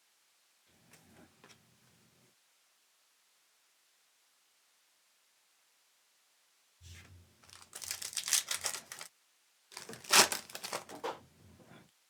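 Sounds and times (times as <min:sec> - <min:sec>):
foil wrapper tearing and crinkling: 0:07.4 - 0:09.1, 0:09.7 - 0:11.2.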